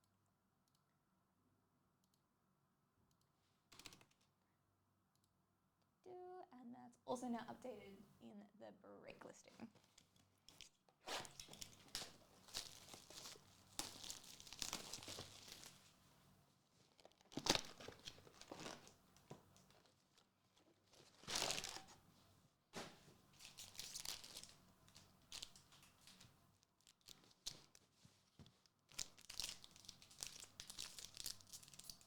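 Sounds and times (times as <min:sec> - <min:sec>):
packaging tearing and crinkling: 0:11.1 - 0:15.9, 0:17.0 - 0:19.0, 0:21.2 - 0:22.0, 0:23.4 - 0:27.9, 0:28.9 - 0:32.0.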